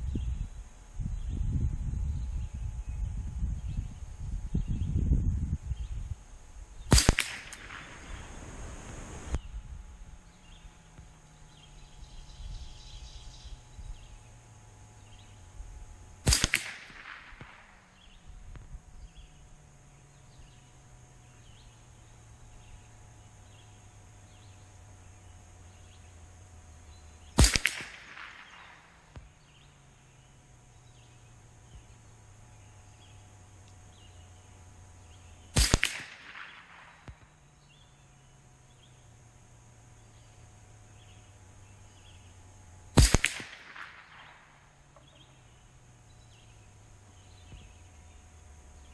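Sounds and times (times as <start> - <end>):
rifle shots with echo: 6.9 - 8.8, 16.2 - 18.2, 27.4 - 29.3, 35.5 - 37.4, 42.9 - 45.2.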